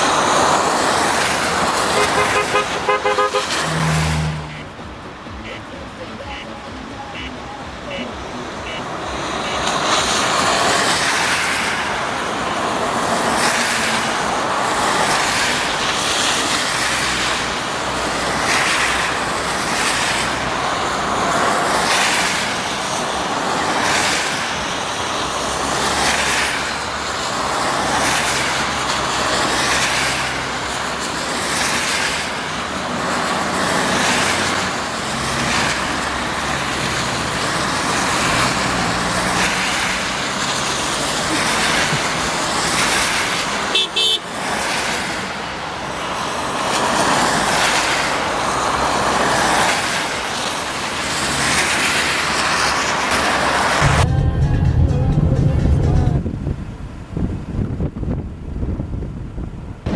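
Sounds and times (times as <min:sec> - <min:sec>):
road and wind noise: 0:00.0 - 0:59.9
low engine hum: 0:53.8 - 0:58.8.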